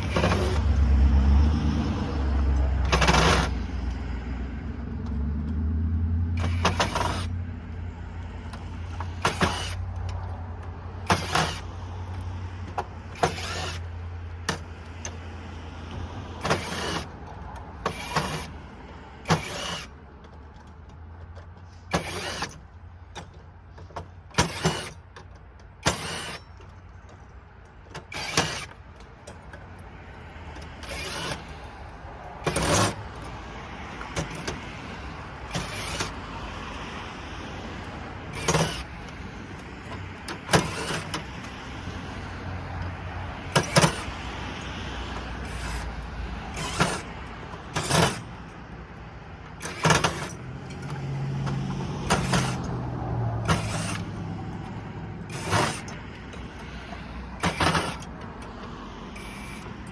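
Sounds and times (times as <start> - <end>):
cordless drill driving screws: 0.0 - 0.8, 1.8 - 4.0, 6.4 - 7.4, 8.2 - 10.4, 11.0 - 15.2, 15.8 - 20.4, 21.7 - 23.4, 24.3 - 25.1, 25.8 - 26.8, 28.0 - 29.1, 30.5 - 42.1, 43.4 - 48.4, 49.5 - 59.9.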